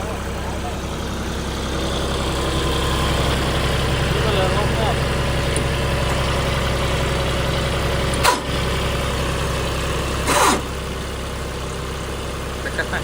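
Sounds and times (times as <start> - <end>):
tractor engine idling: 0.0 - 13.0
short sharp noises: 10.2 - 10.7.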